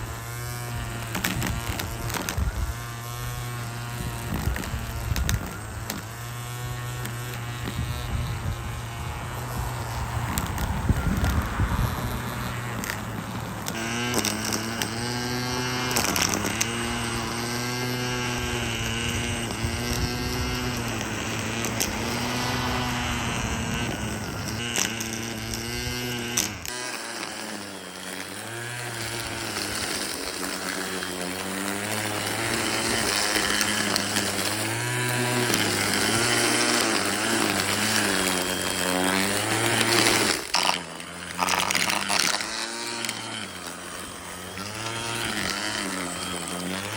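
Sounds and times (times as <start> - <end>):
string trimmer cutting grass: 0.0 - 46.9.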